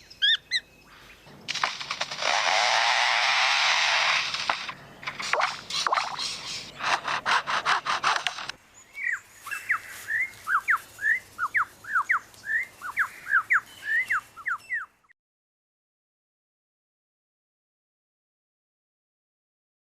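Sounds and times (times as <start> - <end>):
lyrebird mimicking a chainsaw: 1.5 - 8.6
bird whistling notes: 8.9 - 14.9.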